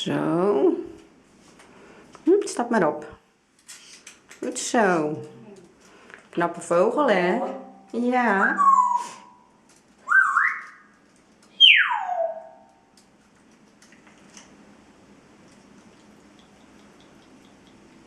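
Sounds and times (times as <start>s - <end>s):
parrot whistling: 8.4s - 10.9s, 11.6s - 12.7s.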